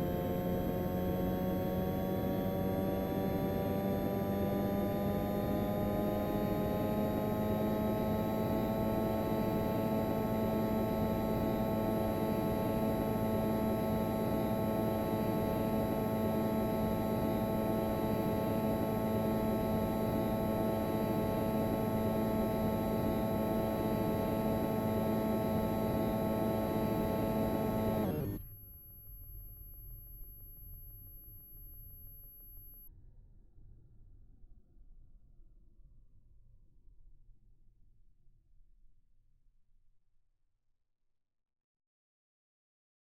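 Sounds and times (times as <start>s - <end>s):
steady whining tones: 0.0s - 32.8s.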